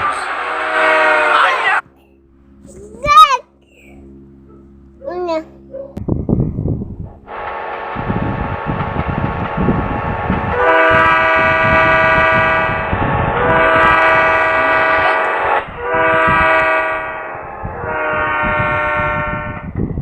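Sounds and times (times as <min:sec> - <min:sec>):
train horn chord blasts: 0:00.0 - 0:02.6, 0:07.2 - 0:19.8
running train rumble: 0:00.0 - 0:20.0.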